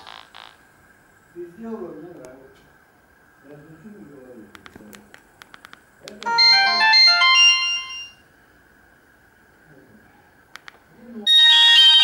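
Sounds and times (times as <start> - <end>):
clicks: 4.5 - 6.4, 10.5 - 10.8
phone ringtone: 6.3 - 8.2, 11.3 - 12.0.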